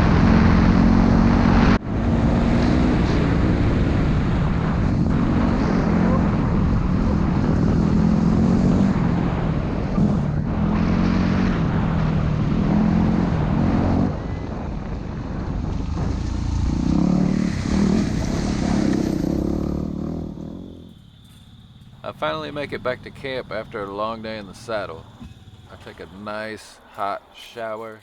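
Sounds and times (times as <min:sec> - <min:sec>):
motorcycle engine running: 0:00.0 - 0:26.4
wind rush: 0:00.0 - 0:27.4.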